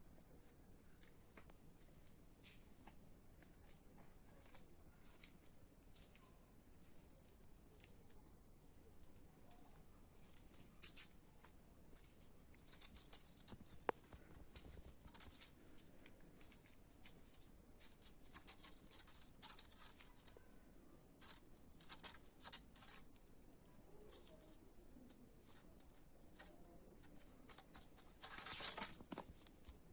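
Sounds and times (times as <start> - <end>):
small scratches and clicks: 9.0 - 29.9
kittens rustling in leafy branches: 11.9 - 20.5, 23.9 - 29.8.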